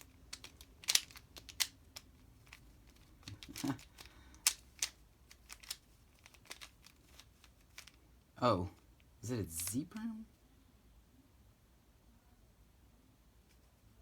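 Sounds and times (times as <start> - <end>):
puzzle cube clicking: 0.0 - 8.0.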